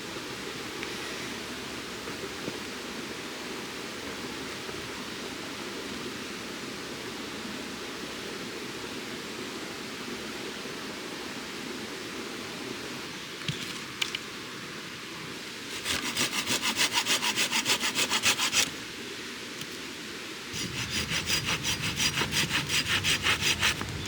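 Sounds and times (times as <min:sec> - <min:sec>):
steady rushing noise: 0:20.5 - 0:24.0.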